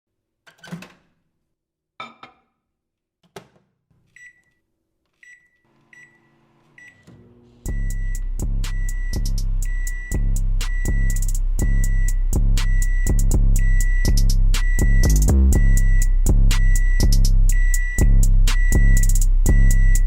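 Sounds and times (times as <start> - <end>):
microwave oven humming: 5.7 - 10.3
loud music with drum beat: 7.7 - 20.0.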